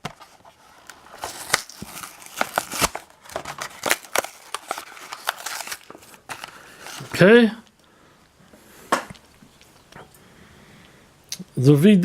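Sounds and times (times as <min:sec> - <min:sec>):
packaging crinkling and tearing: 0:00.0 - 0:07.3.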